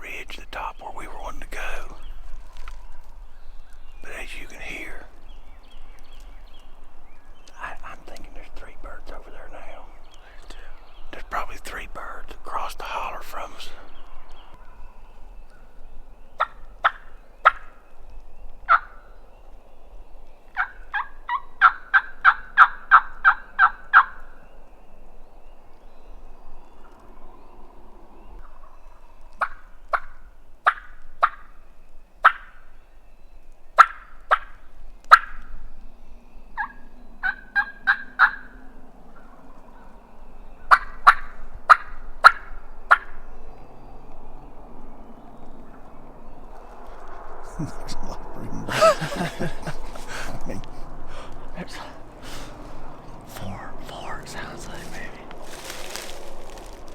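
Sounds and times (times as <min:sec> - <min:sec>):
wild turkeys gobbling: 0:46.8 - 0:56.8.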